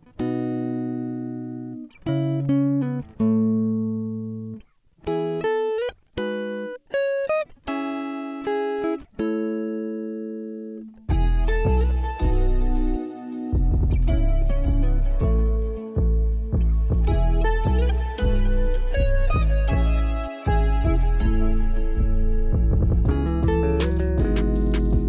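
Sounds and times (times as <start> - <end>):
guitar chords ringing out: 0.0 - 25.0
backing music with bass: 11.1 - 25.0.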